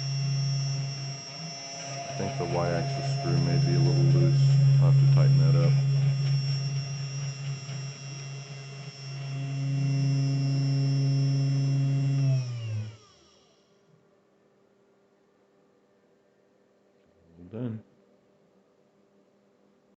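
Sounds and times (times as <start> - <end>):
spindle motor humming and whining: 0.0 - 13.8.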